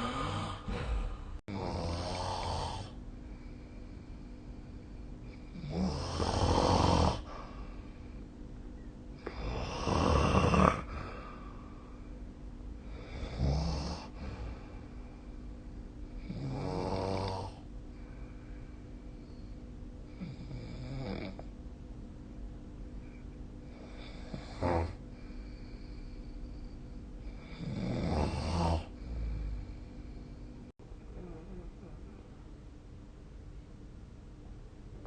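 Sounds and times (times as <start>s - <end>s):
person snoring: 0.0s - 3.0s, 5.4s - 7.5s, 9.2s - 11.4s, 12.9s - 14.8s, 16.2s - 17.6s, 23.8s - 25.0s, 27.4s - 29.8s
faint steady hum: 0.0s - 35.0s.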